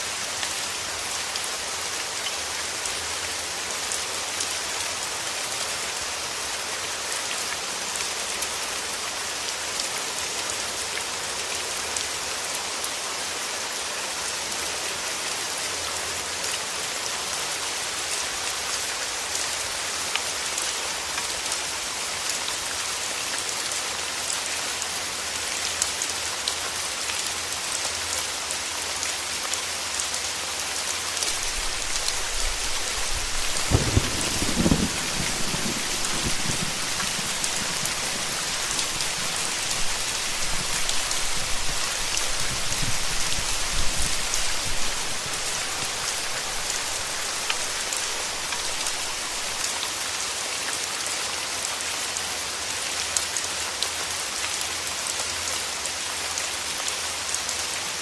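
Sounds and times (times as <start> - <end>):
steady rain falling: 0.0 - 58.0
rumble of thunder: 31.4 - 41.8.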